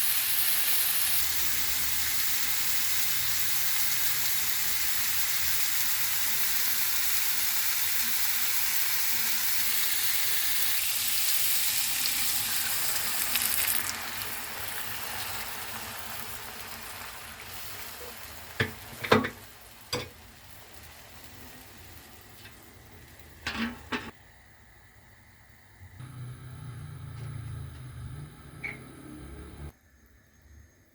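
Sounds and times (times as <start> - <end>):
food frying in hot oil: 0.0 - 24.2.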